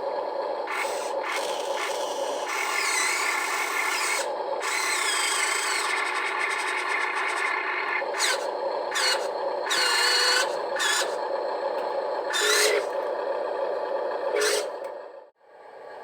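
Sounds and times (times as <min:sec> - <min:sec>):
small electric motors whining: 0:00.6 - 0:13.6, 0:14.2 - 0:15.0
short louder motor bursts: 0:00.7 - 0:11.3, 0:12.3 - 0:13.0, 0:14.3 - 0:14.8.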